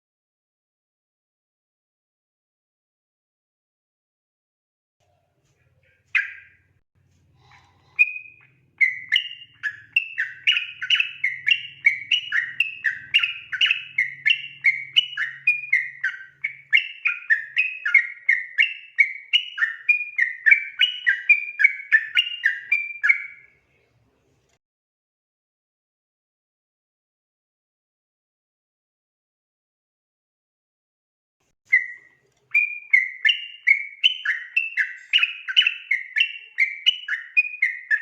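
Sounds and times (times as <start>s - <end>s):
bulbul singing: 5.6s - 6.7s, 7.4s - 23.6s, 31.7s - 38.0s.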